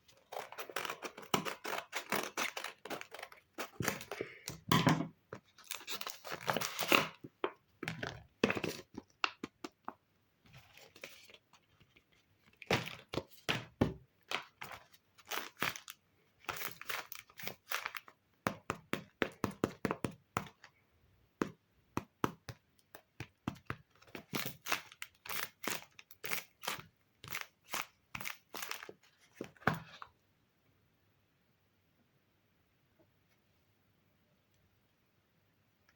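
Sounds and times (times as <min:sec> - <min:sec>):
paper crinkling: 0:05.4 - 0:07.0, 0:10.5 - 0:13.5, 0:14.3 - 0:18.1.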